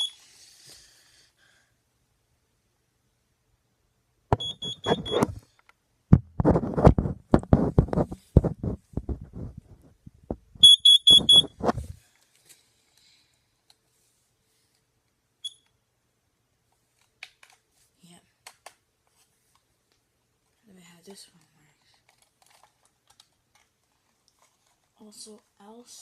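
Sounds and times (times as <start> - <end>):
high-pitched alarm beeps: 4.4 - 5.3, 10.6 - 11.5.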